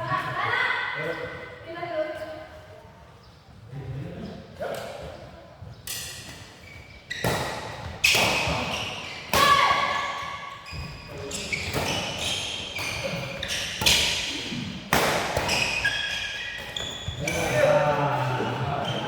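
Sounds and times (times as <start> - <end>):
shoes squeaking on court: 4.8 - 14.7, 15.4 - 17.6, 18.4 - 19.0
racket hitting shuttlecock: 5.9 - 10.5, 11.4 - 16.8.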